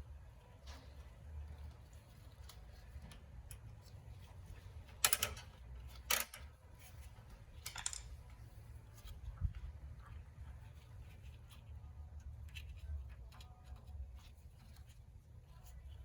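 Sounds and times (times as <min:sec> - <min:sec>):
low steady hum: 0:00.0 - 0:16.0
tools and metal parts clicking: 0:04.8 - 0:06.6, 0:07.6 - 0:08.3.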